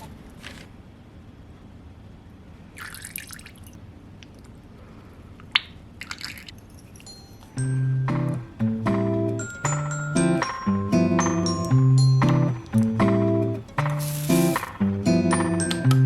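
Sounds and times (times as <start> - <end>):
liquid splashes: 2.8 - 3.8, 6.0 - 6.6
soft background music: 7.1 - 16.0.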